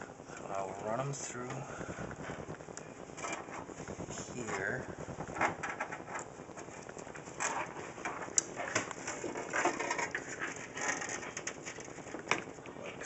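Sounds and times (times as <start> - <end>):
sharp clicks: 1.4 - 7.2
cables scraping against case: 2.0 - 12.5.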